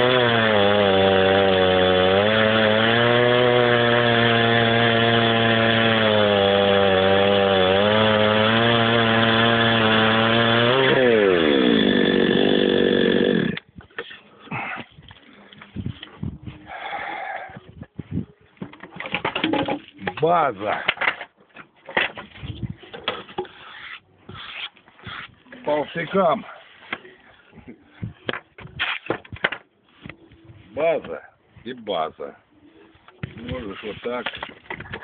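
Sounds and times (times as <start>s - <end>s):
chainsaw cutting wood: 0.0s - 13.7s.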